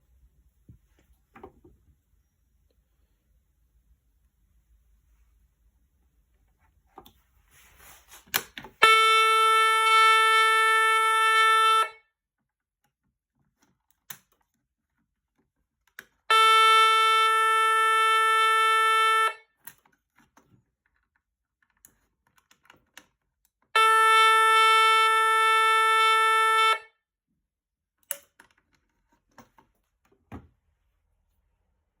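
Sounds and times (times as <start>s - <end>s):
fire alarm buzzing tone: 8.8s - 12.1s, 16.3s - 19.5s, 23.8s - 27.0s.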